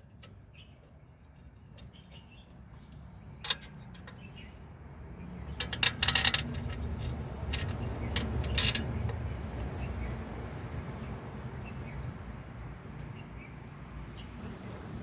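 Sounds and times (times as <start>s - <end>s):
metallic clinks of tools: 5.6s - 8.9s.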